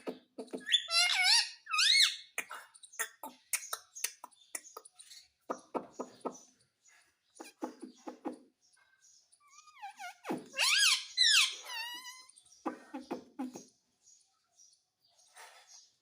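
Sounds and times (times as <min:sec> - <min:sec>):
parrot chattering: 0:00.0 - 0:06.4, 0:09.4 - 0:13.6.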